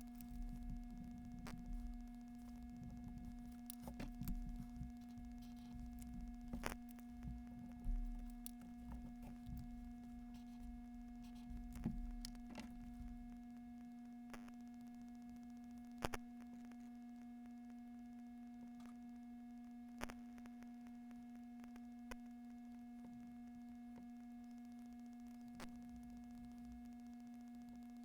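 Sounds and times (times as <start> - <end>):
electrical hum: 0.0 - 13.6.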